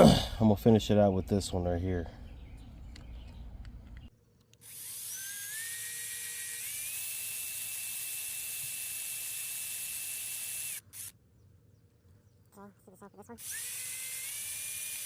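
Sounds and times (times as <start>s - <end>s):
electric drill whining: 4.6s - 11.1s, 13.4s - 15.0s.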